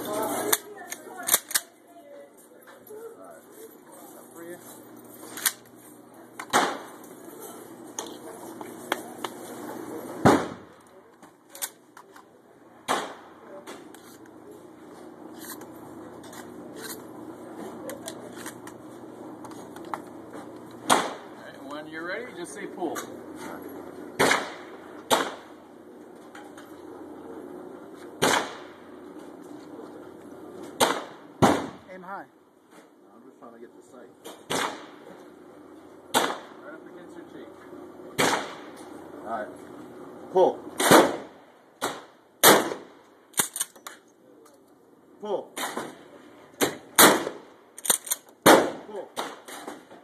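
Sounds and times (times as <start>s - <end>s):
shotgun shots with echo: 6.5s - 6.9s, 10.2s - 10.8s, 12.8s - 13.3s, 20.8s - 21.4s, 24.2s - 25.6s, 28.2s - 28.8s, 30.8s - 31.9s, 34.3s - 35.0s, 36.1s - 36.6s, 38.2s - 38.7s, 40.8s - 43.0s, 46.6s - 47.5s, 48.4s - 49.8s.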